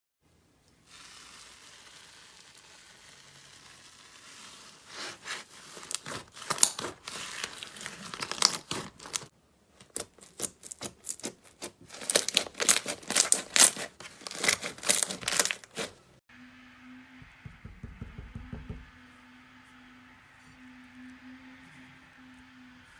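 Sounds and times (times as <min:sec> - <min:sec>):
slime squeezed by hand: 0:12.0 - 0:15.9.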